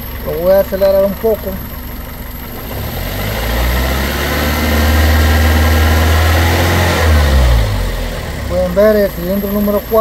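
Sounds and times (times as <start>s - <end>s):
car engine revving: 2.4s - 10.0s.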